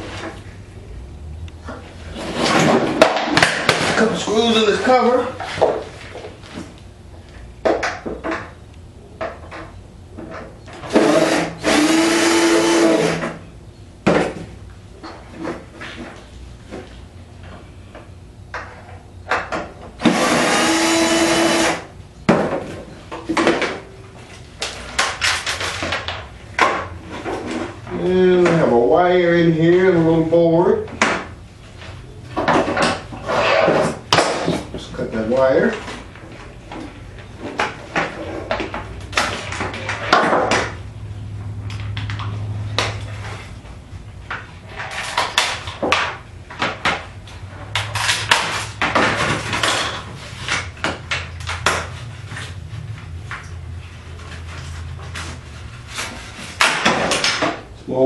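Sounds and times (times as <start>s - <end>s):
low steady hum: 0.0s - 58.0s
power drill running: 10.9s - 13.2s, 20.0s - 21.9s.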